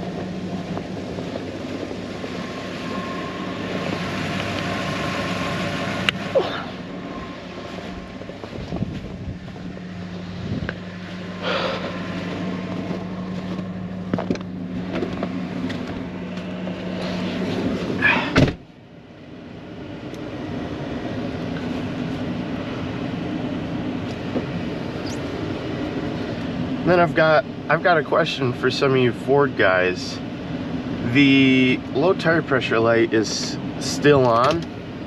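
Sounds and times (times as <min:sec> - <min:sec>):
truck engine hum: 0:00.0 - 0:35.0
loud thud: 0:18.3 - 0:18.6.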